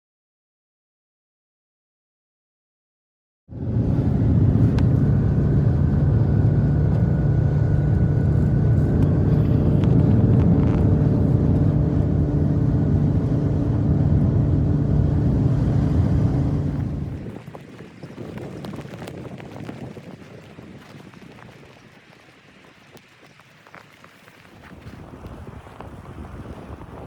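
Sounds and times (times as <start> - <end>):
engine running with low drone: 3.5 - 17.6.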